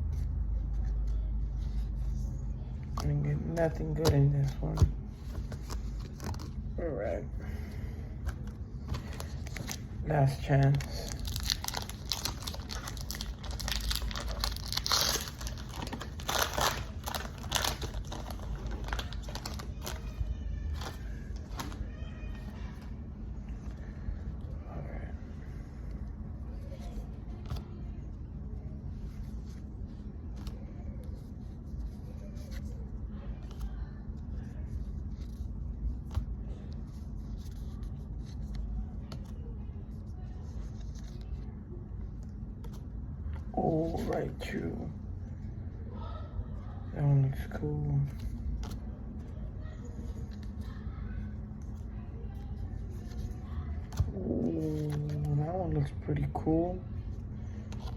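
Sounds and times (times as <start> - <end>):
steady low rumble: 0.0 - 57.9
trading cards clicking and rustling: 8.2 - 21.9
foil wrapper crinkling and tearing: 9.0 - 22.0.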